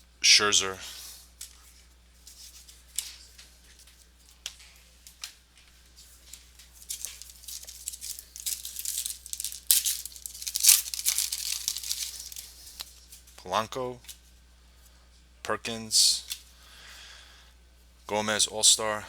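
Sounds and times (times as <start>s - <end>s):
wrapper crinkling and tearing: 6.6s - 12.9s.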